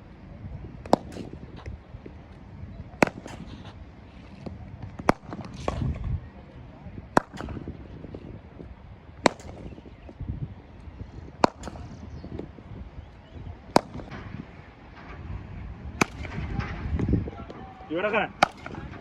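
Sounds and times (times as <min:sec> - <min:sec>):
cricket bat hitting ball: 0:00.8 - 0:01.4, 0:02.9 - 0:03.8, 0:04.4 - 0:06.0, 0:07.1 - 0:08.4, 0:09.2 - 0:10.1, 0:11.2 - 0:12.5, 0:13.6 - 0:14.5, 0:16.0 - 0:16.6, 0:18.3 - 0:19.0.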